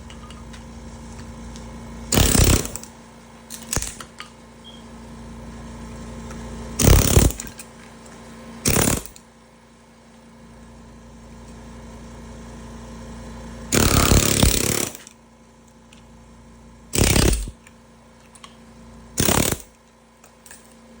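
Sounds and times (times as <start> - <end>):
pneumatic air hammer: 2.1 - 2.9, 3.5 - 4.1, 6.8 - 7.6, 8.6 - 9.2, 13.7 - 15.1, 16.9 - 17.6, 19.2 - 19.8.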